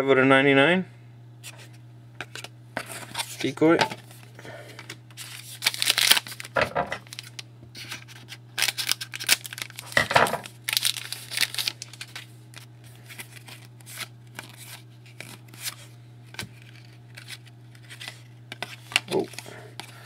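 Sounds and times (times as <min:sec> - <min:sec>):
cards rustling: 0:01.5 - 0:20.0
wrapper crinkling and tearing: 0:05.1 - 0:20.0.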